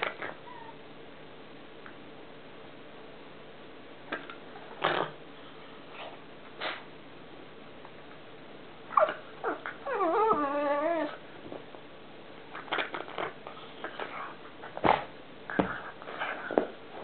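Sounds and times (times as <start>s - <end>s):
dog whining: 0.0s - 0.8s, 8.9s - 11.2s
dog yelping: 0.2s - 0.8s, 8.9s - 11.2s.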